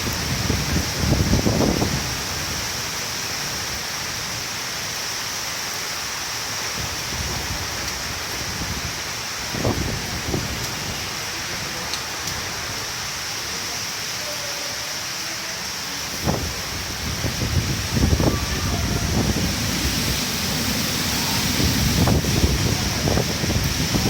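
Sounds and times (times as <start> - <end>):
wind buffeting microphone: 0.0 - 2.8, 6.8 - 11.0, 16.1 - 24.0
steady rain hissing: 0.0 - 24.0.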